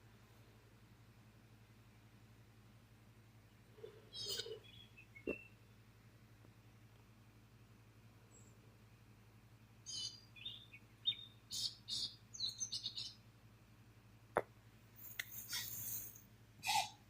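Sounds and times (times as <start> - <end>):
birds chirping: 3.4 - 5.9, 9.8 - 13.2.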